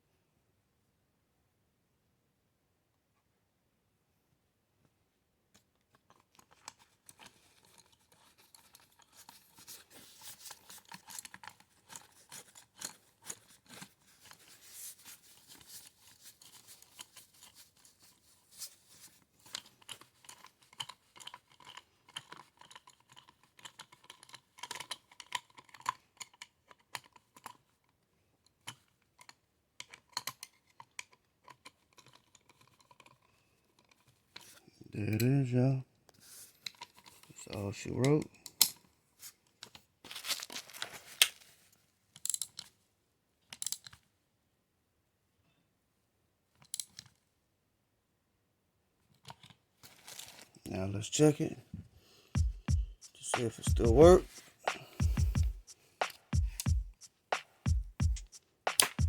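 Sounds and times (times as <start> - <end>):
small metal parts clicking and scraping: 6.0 - 18.7, 19.4 - 27.7, 28.6 - 34.6, 42.2 - 42.7.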